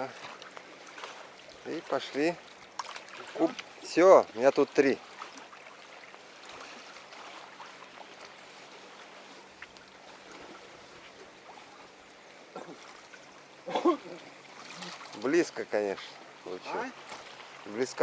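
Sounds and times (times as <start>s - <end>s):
river water rushing: 0.0s - 18.0s.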